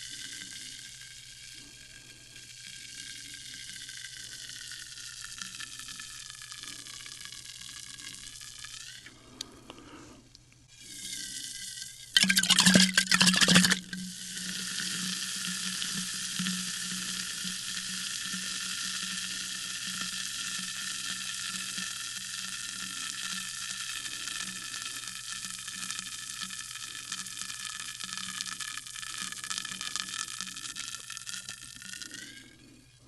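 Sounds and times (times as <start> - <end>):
sparkling water fizzing: 11.2 - 32.2.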